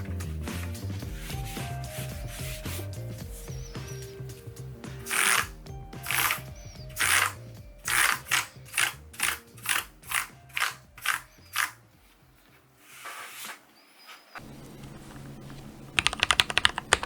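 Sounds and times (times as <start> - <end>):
mechanical keyboard clacks: 7.9 - 11.7, 15.0 - 17.0.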